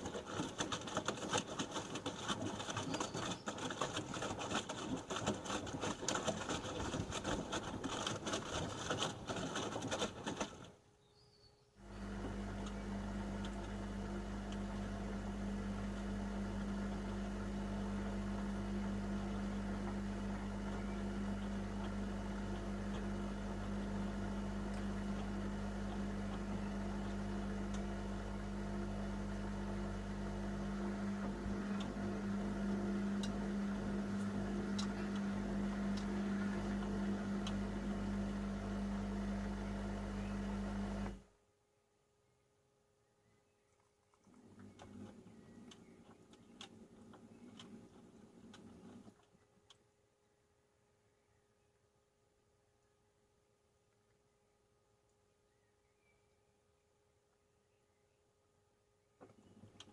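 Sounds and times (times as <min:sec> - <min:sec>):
washing machine humming: 0:00.0 - 0:10.8, 0:11.8 - 0:41.3.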